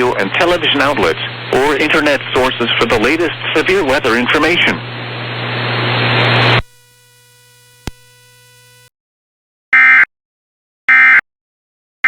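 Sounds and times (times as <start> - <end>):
faint hum: 0.0 - 8.9
sharp click: 7.8 - 8.1.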